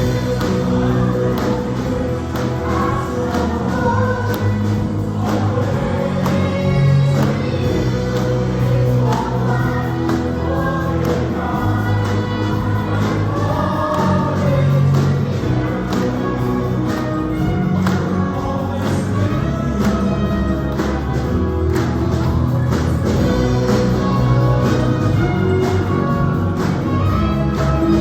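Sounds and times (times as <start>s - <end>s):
choir singing a hymn: 0.0s - 20.4s
instrumental accompaniment with beat: 0.0s - 28.0s.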